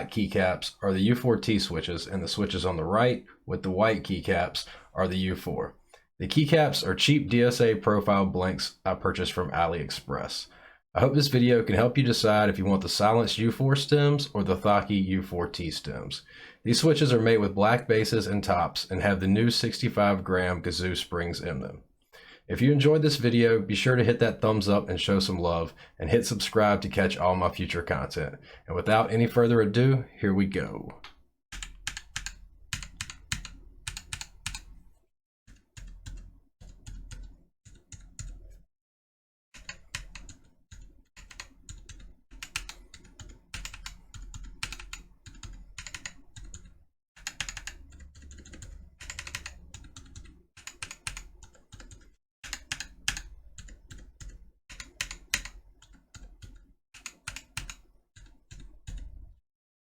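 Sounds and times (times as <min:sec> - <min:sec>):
typing on mechanical keyboard: 0:31.5 - 0:34.7, 0:35.5 - 0:38.4, 0:39.6 - 0:59.2.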